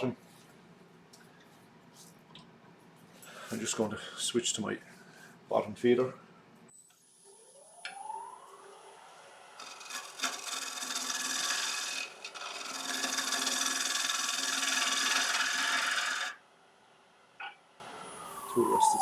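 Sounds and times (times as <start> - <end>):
wood lathe whine: 7.5 - 16.4
gouge scraping wooden bowl: 9.6 - 16.4.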